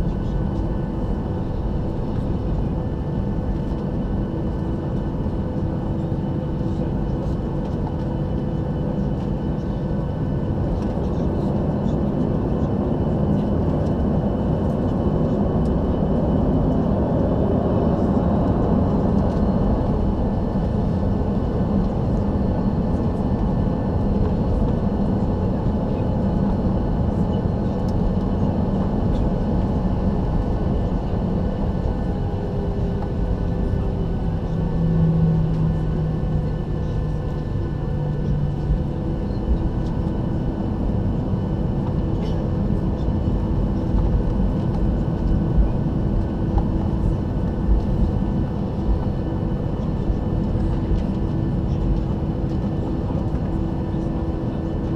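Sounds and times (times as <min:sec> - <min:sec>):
airplane cabin jet engine rumble: 0:00.0 - 0:54.9.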